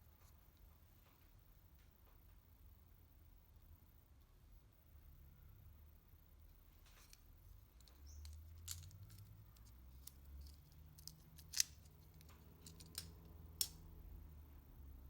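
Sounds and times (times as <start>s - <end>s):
faint low hum: 0.0s - 15.0s
clicks of metal parts handled: 7.8s - 13.8s.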